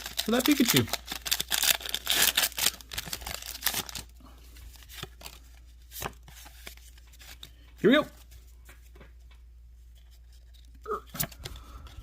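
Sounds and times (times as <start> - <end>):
foil wrapper crinkling and tearing: 0.0 - 4.1.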